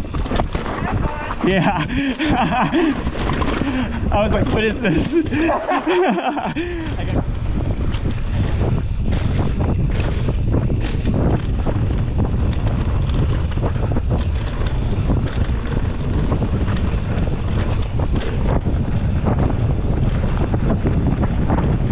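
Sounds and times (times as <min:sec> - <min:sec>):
bike clicks and rattles: 0:00.0 - 0:21.9
wind buffeting microphone: 0:00.0 - 0:21.9.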